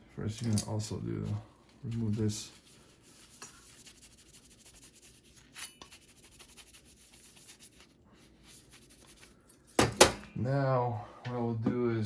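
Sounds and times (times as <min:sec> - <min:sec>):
paper towel rubbing and scratching: 0:01.1 - 0:09.4.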